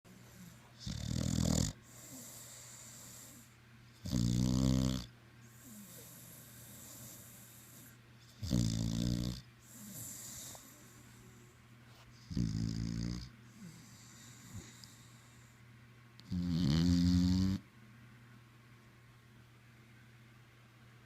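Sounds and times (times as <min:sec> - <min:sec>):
loud snoring: 0:00.8 - 0:03.4, 0:04.0 - 0:07.4, 0:08.4 - 0:10.6, 0:12.3 - 0:14.8, 0:16.3 - 0:17.6.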